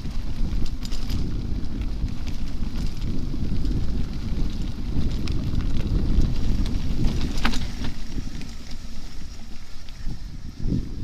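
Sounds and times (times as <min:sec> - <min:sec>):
bike ticks and rattles: 0:00.0 - 0:11.0
wind buffeting microphone: 0:00.0 - 0:11.0.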